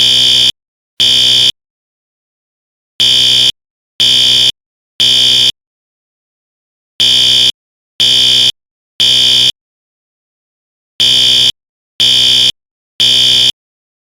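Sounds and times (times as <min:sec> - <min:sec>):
fire alarm horn blasts: 0:00.0 - 0:01.6, 0:03.0 - 0:05.6, 0:07.0 - 0:09.6, 0:11.0 - 0:13.6.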